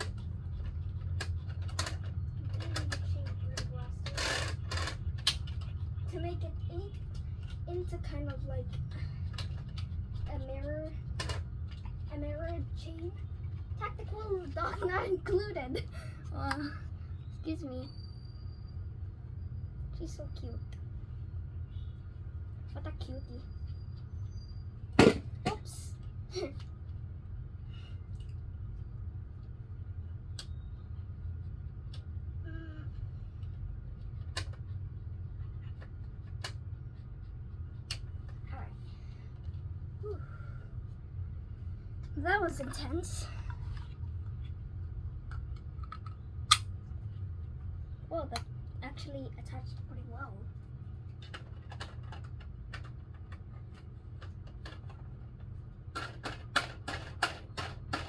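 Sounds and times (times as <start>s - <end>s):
steady low hum: 0.0s - 58.0s
plastic toy parts snapping together: 45.8s - 46.7s
plastic toy parts clicking: 51.2s - 55.0s, 55.9s - 58.0s.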